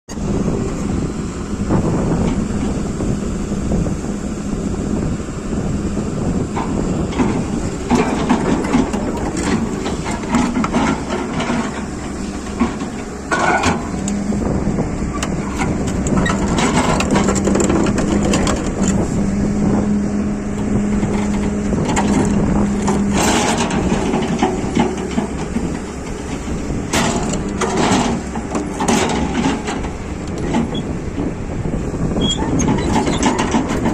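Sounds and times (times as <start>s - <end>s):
excavator engine hum: 0.1s - 33.9s
crunching and clanking knocks: 6.5s - 14.3s, 15.0s - 19.2s, 20.6s - 31.4s, 32.4s - 33.9s.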